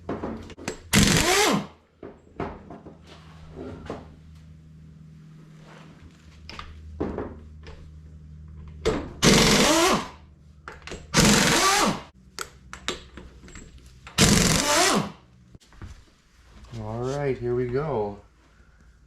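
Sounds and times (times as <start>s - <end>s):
impact wrench spinning bolts: 0.7s - 1.6s, 10.8s - 15.1s.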